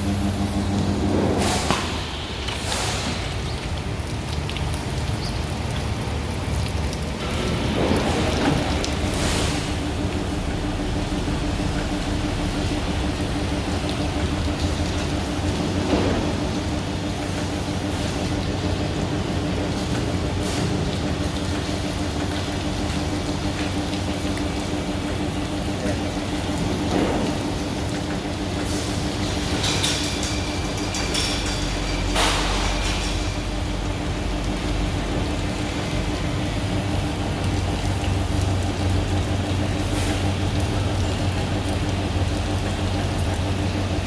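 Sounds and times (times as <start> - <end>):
welding machine humming and hissing: 0.0 - 15.6.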